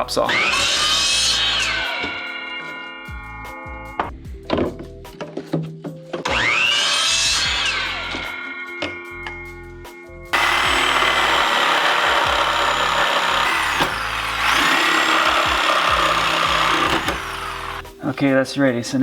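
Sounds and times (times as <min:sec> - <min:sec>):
chop saw cutting plastic pipe: 0:06.3 - 0:07.5, 0:10.4 - 0:18.0.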